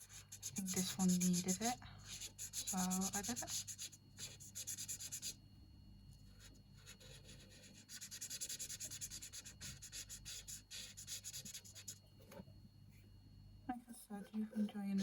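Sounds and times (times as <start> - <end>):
marker stroking on paper: 0.0 - 5.4, 6.3 - 12.0.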